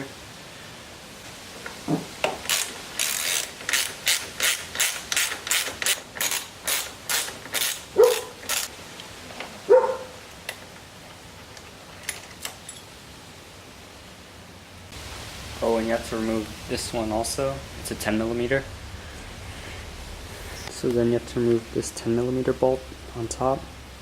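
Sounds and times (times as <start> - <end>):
ratchet wrench clicking: 2.4 - 8.7.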